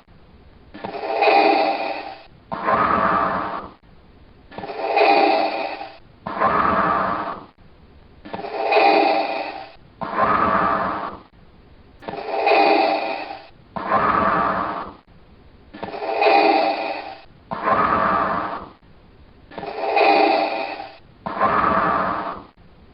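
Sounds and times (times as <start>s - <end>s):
mechanical respirator breathing: 0.8s - 3.8s, 4.5s - 7.6s, 8.3s - 11.3s, 12.0s - 15.0s, 15.8s - 18.8s, 19.5s - 22.6s.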